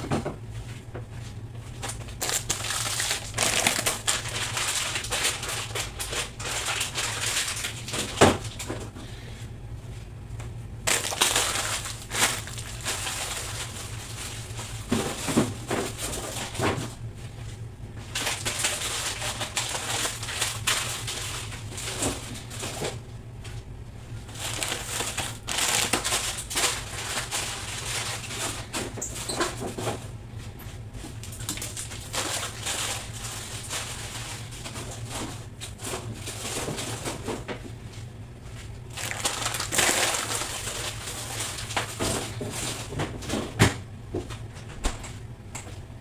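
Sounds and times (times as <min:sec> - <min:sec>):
steady low hum: 0:00.0 - 0:46.0
scrubbing and rustling: 0:24.0 - 0:43.6.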